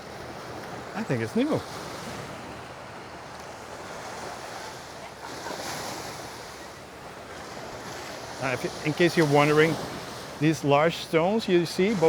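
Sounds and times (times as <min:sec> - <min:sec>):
sea surf washing on beach: 0:00.0 - 0:12.0.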